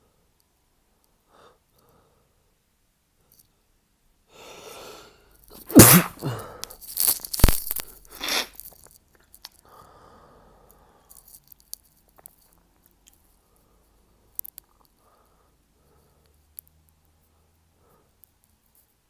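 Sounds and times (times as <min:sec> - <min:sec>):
breath drawn in: 0:04.4 - 0:06.6, 0:08.1 - 0:08.5
man sneezing stifled: 0:05.6 - 0:06.6, 0:08.2 - 0:08.5.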